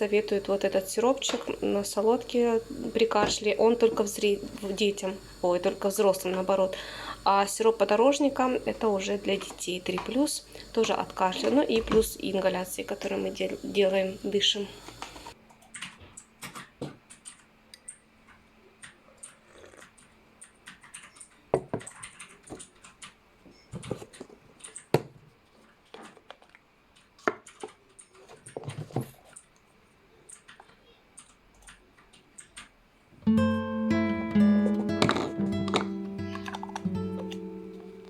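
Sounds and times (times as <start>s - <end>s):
music: 33.2s - 38.0s.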